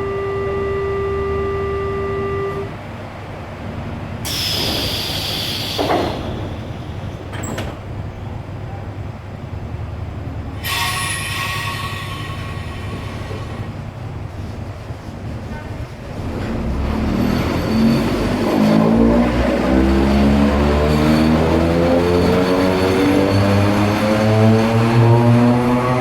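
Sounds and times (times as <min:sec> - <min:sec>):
electric train growling: 0:00.0 - 0:26.0
high hissing and squealing: 0:04.3 - 0:07.4, 0:10.6 - 0:13.9.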